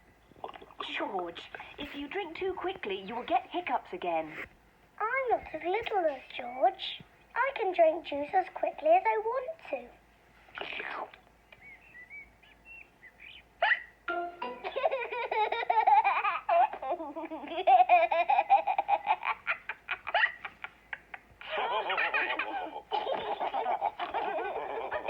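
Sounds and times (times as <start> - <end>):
cartoon voices laughing: 13.6 - 25.0
background music: 14.1 - 15.3.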